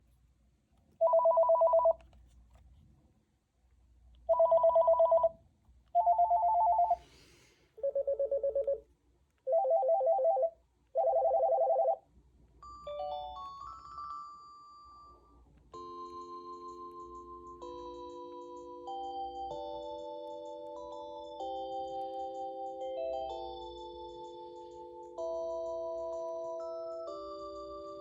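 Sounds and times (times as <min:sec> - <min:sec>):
warbling electronic phone ring: 0:04.3 - 0:05.3, 0:06.0 - 0:07.0, 0:09.5 - 0:12.0
melodic ringtone tune: 0:06.0 - 0:07.0, 0:09.5 - 0:12.0, 0:12.6 - 0:28.0.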